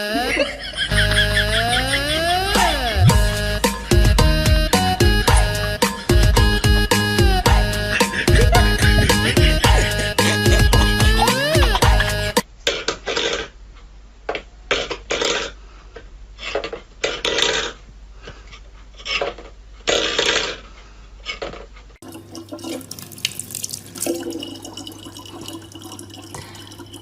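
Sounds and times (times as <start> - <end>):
low hum: 0.6 - 12.4
running water: 22.0 - 27.0
water splashing: 22.0 - 27.0.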